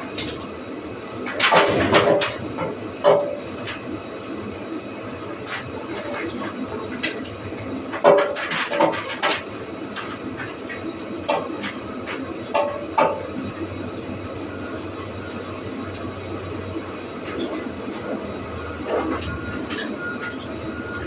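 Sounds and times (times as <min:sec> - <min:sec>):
sawmill machinery running: 0:00.0 - 0:21.0
sharp knocks and clatters: 0:08.0 - 0:10.5.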